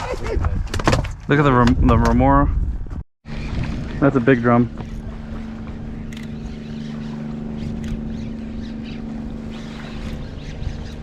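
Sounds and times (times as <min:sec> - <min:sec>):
boat motor humming: 0:03.2 - 0:11.0.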